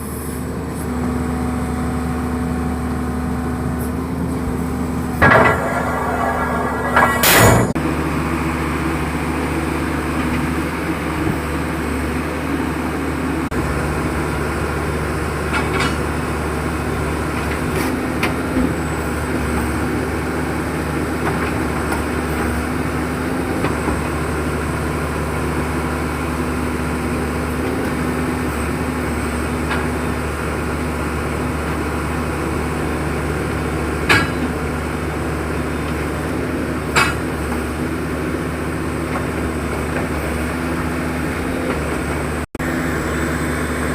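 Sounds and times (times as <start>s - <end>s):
diesel engine running: 0.0s - 43.9s
sharp metallic knocks: 5.2s - 7.8s.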